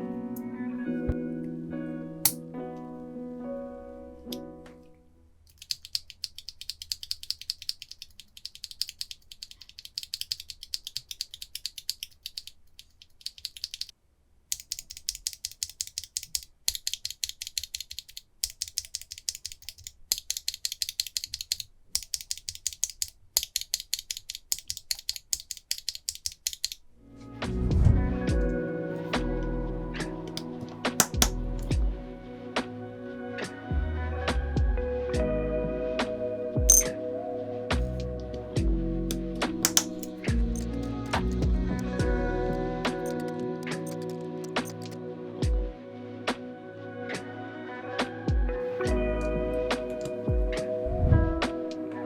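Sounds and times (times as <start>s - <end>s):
mechanical keyboard typing: 5.5s - 13.9s, 14.5s - 26.8s, 30.3s - 31.4s, 39.6s - 41.5s, 43.0s - 45.0s.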